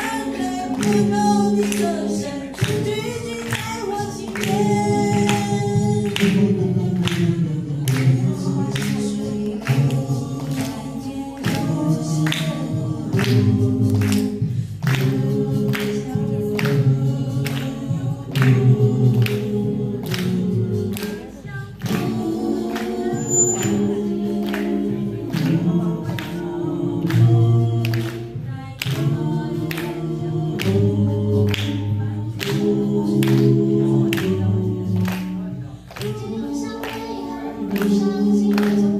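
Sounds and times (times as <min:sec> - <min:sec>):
vocal group singing in harmony: 0:00.0 - 0:38.9.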